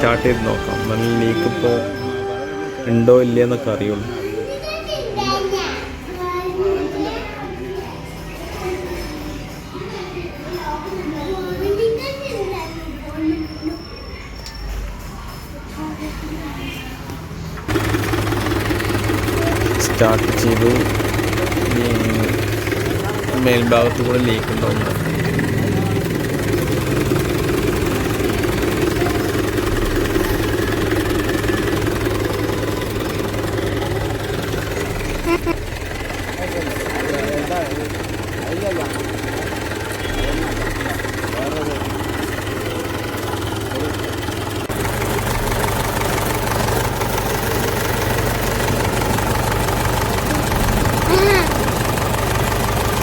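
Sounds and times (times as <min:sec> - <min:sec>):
tractor diesel engine idling: 0:00.0 - 0:04.4, 0:17.6 - 0:53.0.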